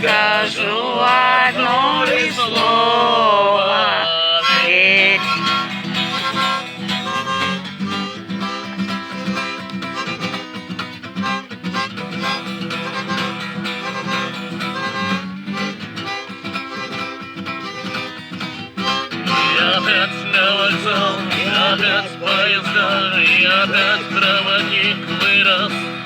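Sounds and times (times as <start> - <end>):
person singing: 0.0 - 6.7, 19.2 - 26.0
acoustic guitar playing: 0.0 - 26.0.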